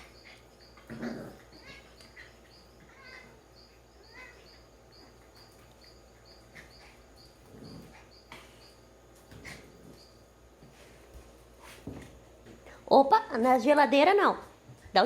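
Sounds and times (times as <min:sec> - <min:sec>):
puppy and kitten scuffling: 0:00.0 - 0:12.8
faint high chirp: 0:01.5 - 0:08.9.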